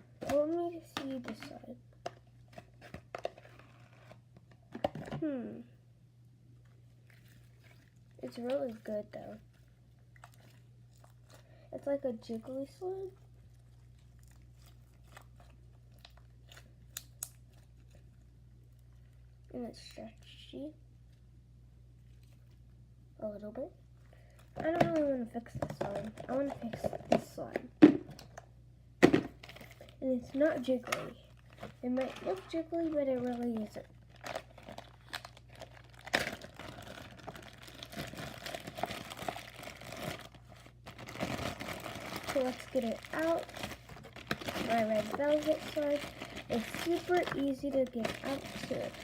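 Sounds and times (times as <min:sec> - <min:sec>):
low steady hum: 0:00.0 - 0:49.0.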